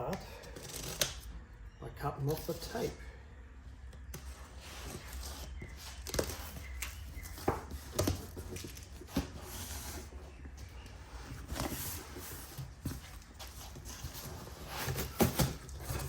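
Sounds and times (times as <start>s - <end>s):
scraping and rustling: 4.1s - 16.0s
packing tape pulled off box: 11.6s - 16.0s.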